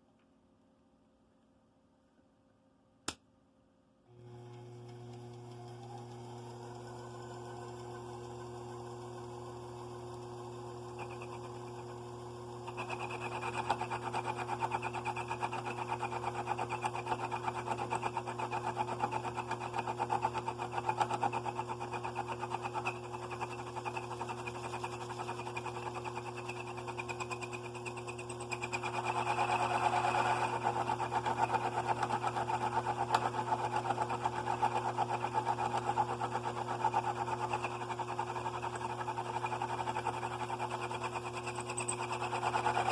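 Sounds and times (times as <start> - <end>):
buzzing mechanical rattle: 10.0 - 42.9.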